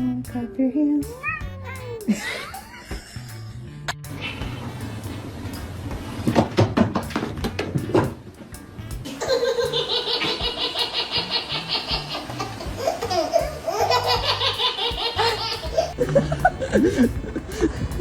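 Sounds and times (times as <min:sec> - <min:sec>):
faint background music: 0:00.0 - 0:18.0
high-pitched pulsing laughter: 0:01.0 - 0:04.6, 0:09.1 - 0:18.0.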